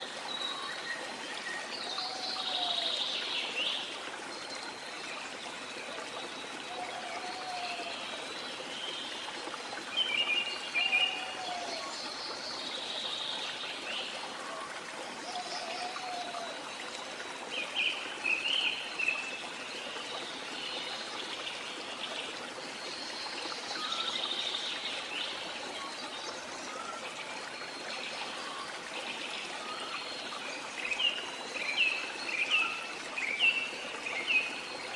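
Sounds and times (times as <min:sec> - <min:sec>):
small waterfall trickling: 0:00.0 - 0:34.9.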